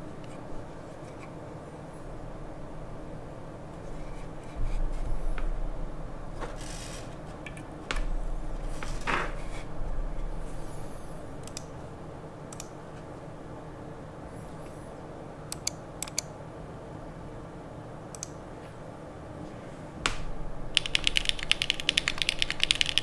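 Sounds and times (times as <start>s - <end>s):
isolated clicks: 12.5s - 12.8s, 15.5s - 16.3s, 20.8s - 23.0s.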